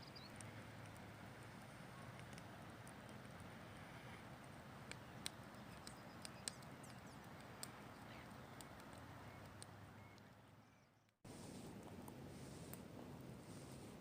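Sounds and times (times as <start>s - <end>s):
faint background hiss: 0.0s - 14.0s
small sharp clicks: 4.9s - 7.8s.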